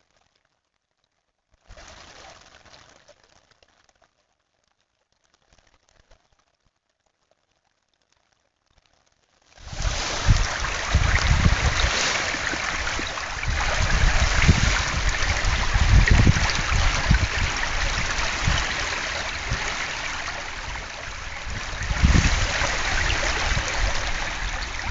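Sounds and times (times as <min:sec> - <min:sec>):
creek water rushing: 0:09.6 - 0:24.9.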